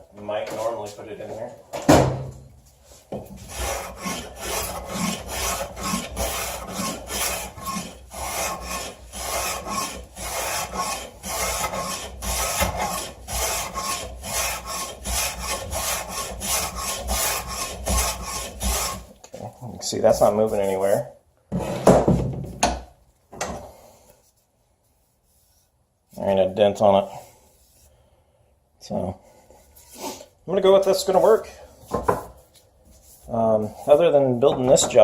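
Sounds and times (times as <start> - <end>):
rhythmic scraping on wood: 2.8 - 19.4.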